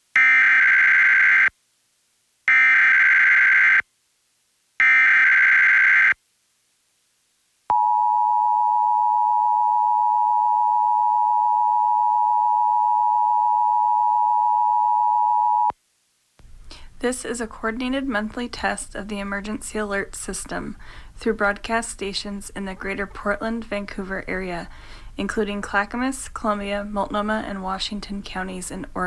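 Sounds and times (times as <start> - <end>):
two-tone attention signal: 7.7 - 15.7.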